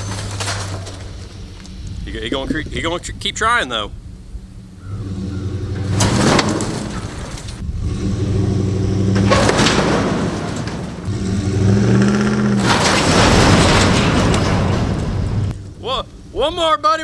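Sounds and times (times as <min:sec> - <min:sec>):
truck engine revving: 0:04.4 - 0:16.3.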